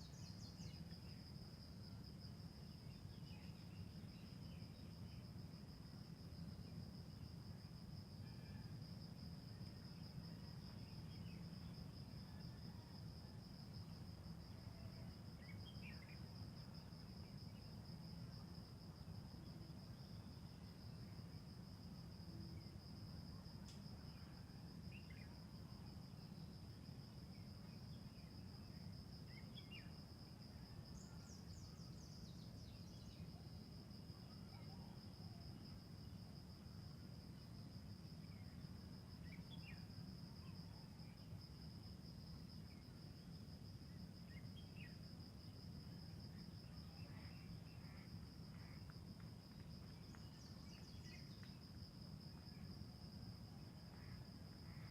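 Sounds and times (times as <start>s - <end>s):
crickets trilling: 0.0s - 54.9s.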